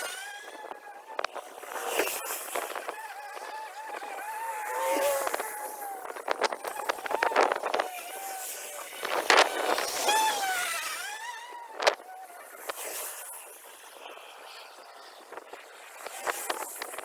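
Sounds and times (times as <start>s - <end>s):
electric lawn mower whining: 0.0s - 12.8s.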